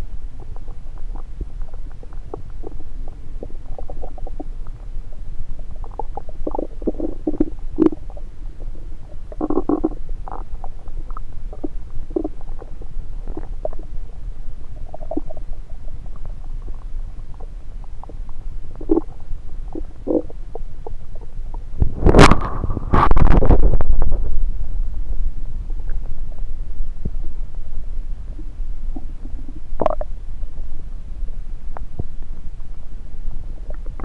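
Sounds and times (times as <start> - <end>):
stomach gurgles and squeaks: 0.0 - 24.7, 25.7 - 34.0
low rumble: 21.6 - 34.0.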